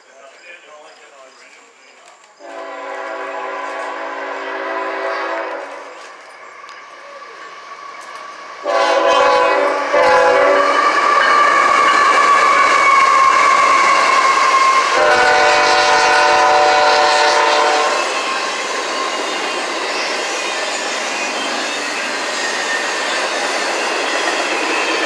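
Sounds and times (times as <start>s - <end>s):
rumble of passing train: 2.0s - 25.0s
locomotive air horn blasts: 2.4s - 6.0s, 8.6s - 11.0s, 12.4s - 18.2s.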